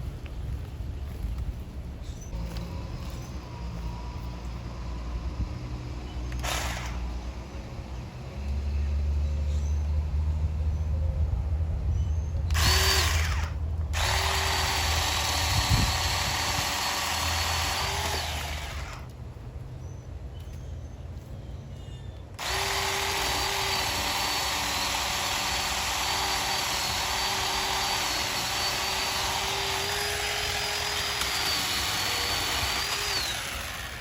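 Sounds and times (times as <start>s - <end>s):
electric chainsaw motor whining: 6.3s - 7.2s, 12.5s - 19.2s, 22.4s - 34.0s.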